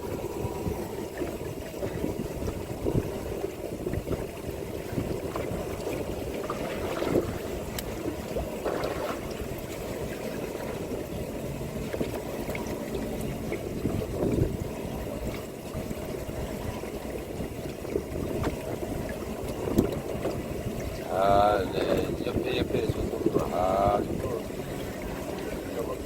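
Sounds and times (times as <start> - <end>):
low steady rumble: 0.0 - 26.0
water sloshing against boat hull: 0.0 - 26.0
faint clicks: 19.5 - 20.4.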